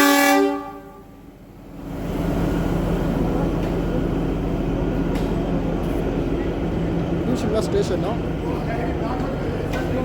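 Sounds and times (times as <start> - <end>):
train locomotive engine hum: 0.0 - 10.0.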